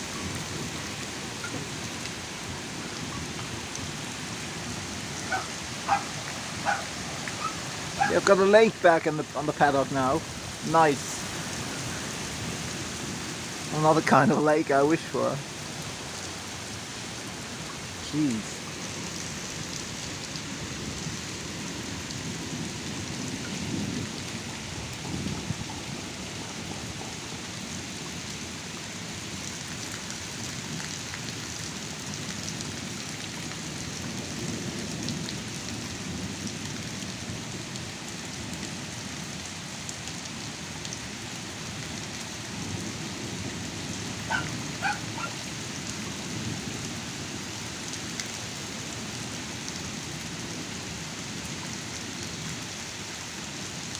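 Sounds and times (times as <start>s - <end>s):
heavy downpour: 0.0s - 53.9s
low rumbling thunder: 20.6s - 27.8s.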